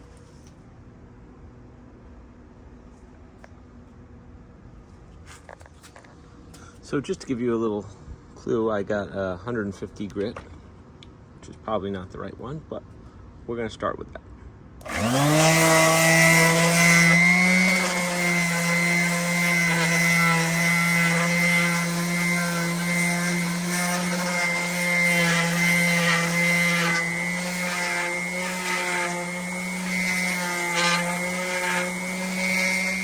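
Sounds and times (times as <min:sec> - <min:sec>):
palm sander running: 0:14.8 - 0:33.0.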